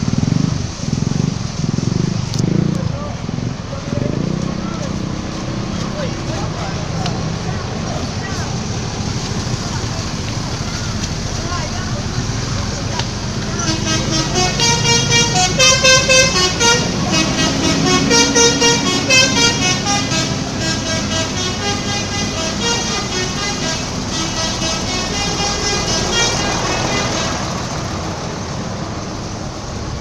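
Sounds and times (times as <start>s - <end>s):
road rumble: 0.0s - 30.0s
multi-tone bus horn melody: 13.4s - 28.0s.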